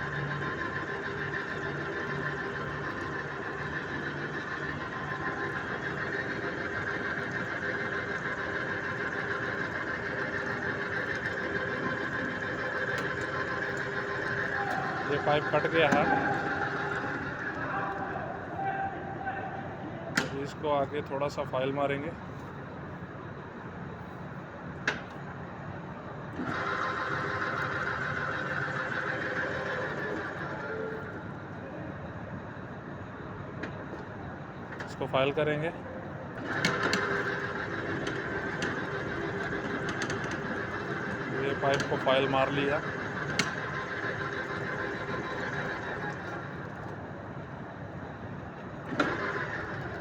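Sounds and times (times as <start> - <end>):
pipe-threading machine cutting pipe: 9.9 - 17.3, 36.4 - 46.4, 48.8 - 50.0.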